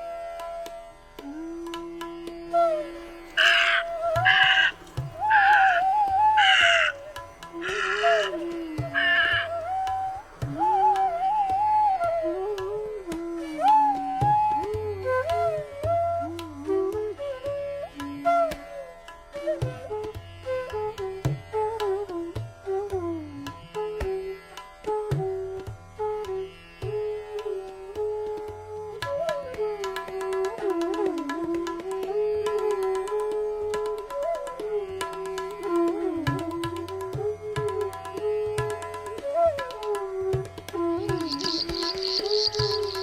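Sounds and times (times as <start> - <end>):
bamboo flute melody: 0.0 - 24.1, 24.9 - 43.0
tabla strokes: 1.2 - 14.9, 25.0 - 43.0.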